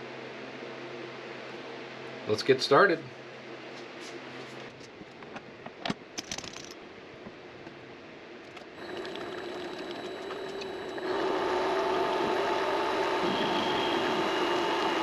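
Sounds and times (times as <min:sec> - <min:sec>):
lathe motor whining: 0:08.8 - 0:15.0.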